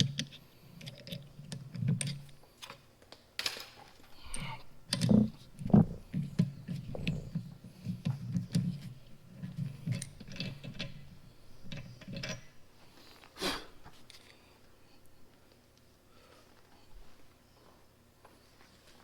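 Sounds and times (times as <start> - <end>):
metal clicks and scraping: 0.0 - 2.8, 3.4 - 12.6.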